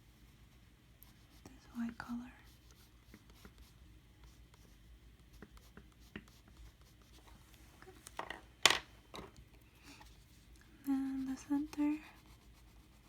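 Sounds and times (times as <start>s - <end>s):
pencil scratching on paper: 1.0s - 7.3s, 11.1s - 13.0s.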